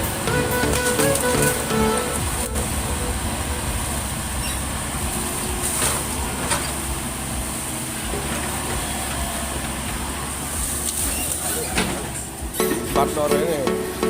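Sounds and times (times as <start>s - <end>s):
diesel engine rumbling: 0.0s - 14.0s.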